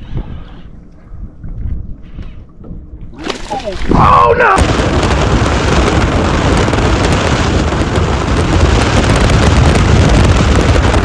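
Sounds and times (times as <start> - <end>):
wind rushing over microphone: 3.8 - 11.0.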